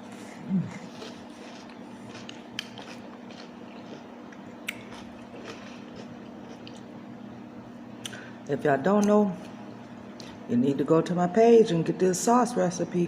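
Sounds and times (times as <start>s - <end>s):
steady low hum: 0.0s - 13.0s
person chewing chicken wings: 0.2s - 6.9s.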